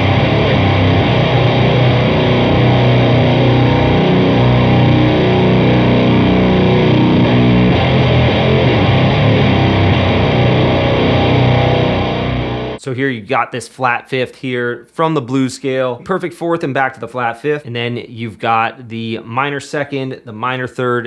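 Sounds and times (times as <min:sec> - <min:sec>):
distorted electric guitar riff: 0:00.0 - 0:12.8.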